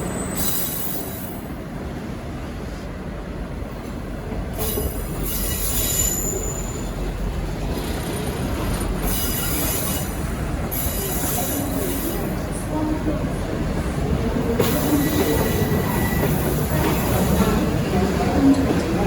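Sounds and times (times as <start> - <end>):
train wheels squealing: 0.0 - 1.4, 4.6 - 7.1, 9.0 - 12.4, 14.6 - 17.1
train low rumble: 0.0 - 19.0.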